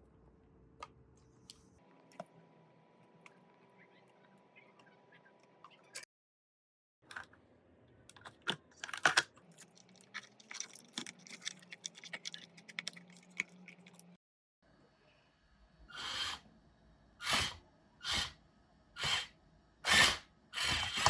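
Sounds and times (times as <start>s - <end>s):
small hard objects clicking: 9.5s - 14.1s.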